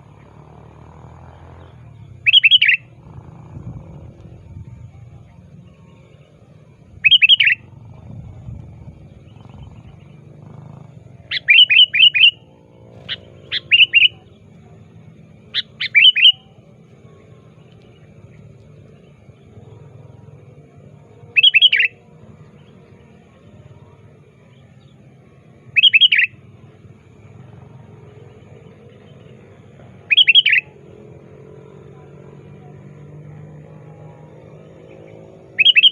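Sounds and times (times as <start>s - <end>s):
low steady hum: 0.0s - 35.9s
bird calling in short bursts: 2.2s - 2.9s, 7.0s - 7.6s, 11.3s - 12.4s, 13.0s - 14.2s, 15.6s - 16.4s, 21.4s - 21.9s, 25.8s - 26.3s, 30.1s - 30.6s, 35.6s - 35.9s.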